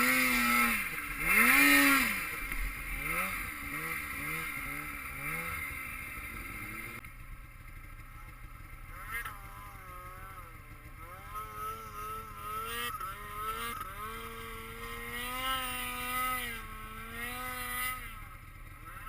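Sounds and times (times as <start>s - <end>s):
snowmobile engine revving: 0.0s - 19.0s.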